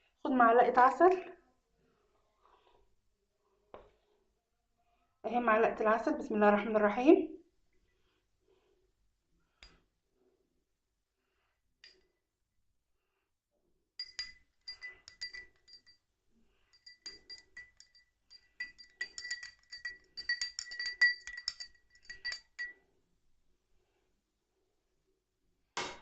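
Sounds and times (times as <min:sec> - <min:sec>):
spoon clinking against glass cup: 0:14.0 - 0:16.0, 0:16.7 - 0:22.8.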